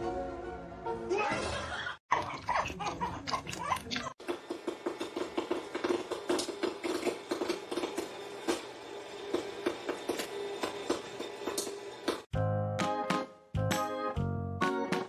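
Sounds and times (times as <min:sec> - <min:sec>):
music: 0:00.0 - 0:01.2, 0:12.3 - 0:15.0.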